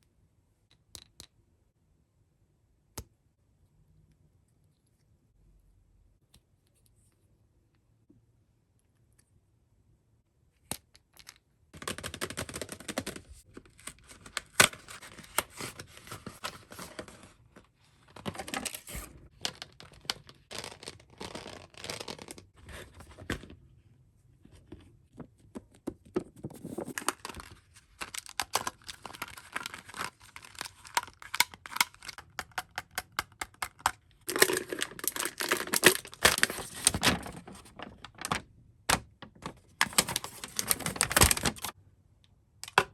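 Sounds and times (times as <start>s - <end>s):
packaging torn and crinkled: 18.3s - 22.5s, 26.8s - 32.2s, 34.3s - 38.4s, 39.4s - 41.8s.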